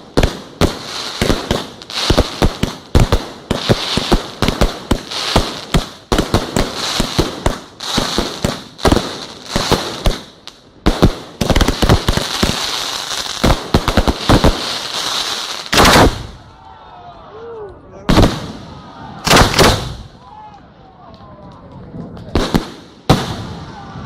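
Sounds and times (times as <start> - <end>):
hiss of burning fireworks: 0.0 - 16.4.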